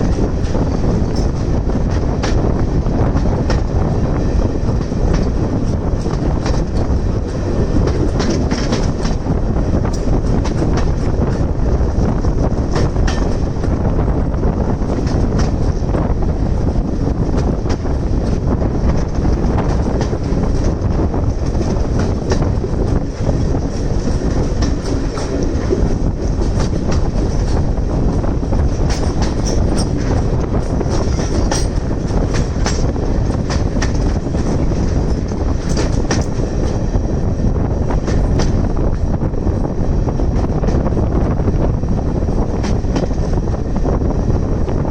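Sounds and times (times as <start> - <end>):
train wheels rumbling on rails: 0.0 - 44.9
clicks over rail joints: 28.8 - 36.8.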